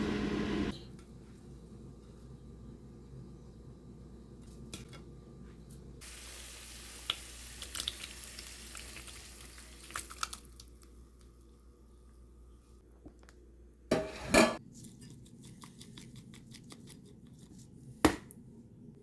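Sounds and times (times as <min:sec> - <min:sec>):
food sizzling in a frying pan: 0:06.0 - 0:10.2.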